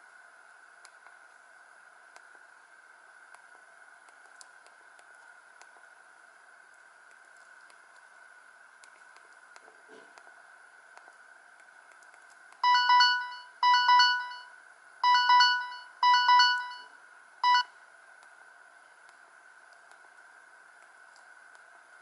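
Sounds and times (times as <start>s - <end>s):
faint steady hiss: 0.0s - 22.0s
mobile phone ringtone melody: 12.6s - 16.9s.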